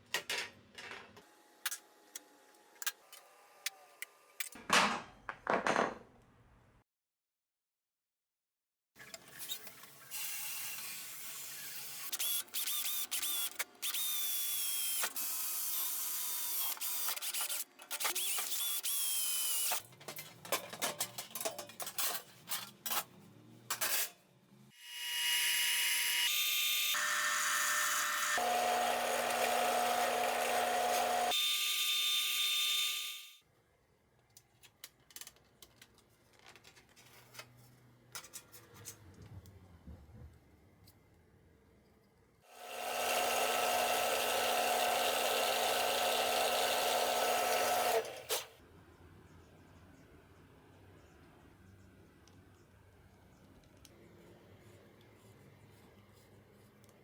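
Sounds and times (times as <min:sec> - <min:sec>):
power tools running: 0:26.0 - 0:33.3, 0:42.5 - 0:48.5.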